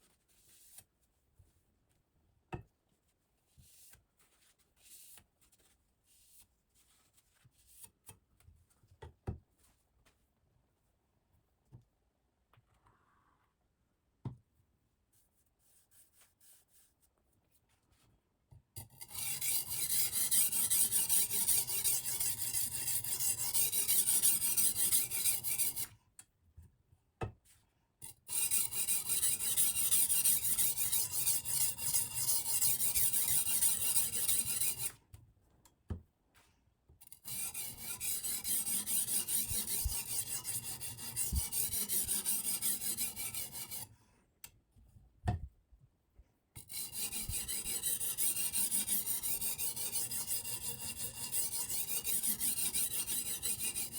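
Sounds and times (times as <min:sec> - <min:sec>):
stone grinding on knife steel: 0:19.0 - 0:25.8, 0:28.3 - 0:34.9, 0:37.2 - 0:43.9, 0:46.7 - 0:53.9.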